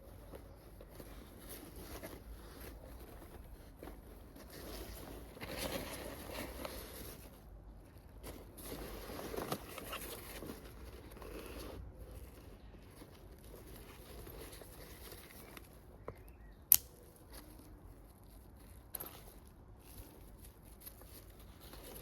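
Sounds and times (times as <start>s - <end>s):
backpack fabric rustling: 0.0s - 15.8s.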